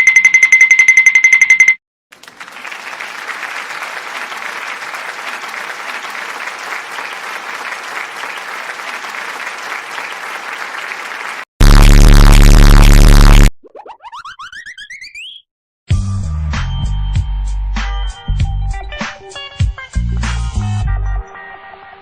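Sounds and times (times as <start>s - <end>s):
crowd applauding: 2.1s - 11.5s
loud distorted low buzz: 11.6s - 13.5s.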